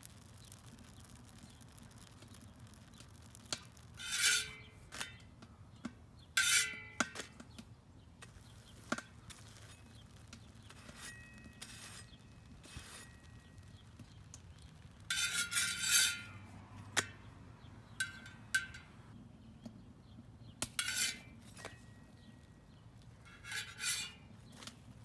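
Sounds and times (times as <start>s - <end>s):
metal clinking on griddle: 3.5s - 5.3s, 6.4s - 7.4s, 10.6s - 13.8s, 15.0s - 17.2s, 17.9s - 19.0s, 20.6s - 22.2s.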